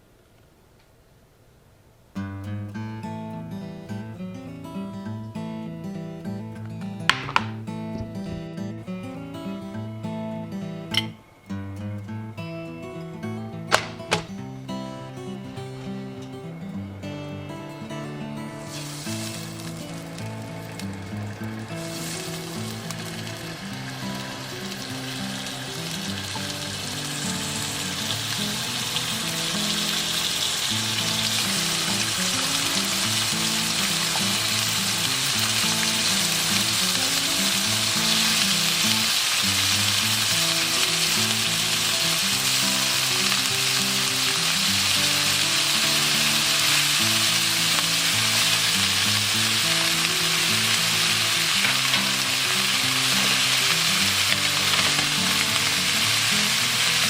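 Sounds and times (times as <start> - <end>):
food sizzling in a pan: 13.7 - 14.5, 18.0 - 57.0.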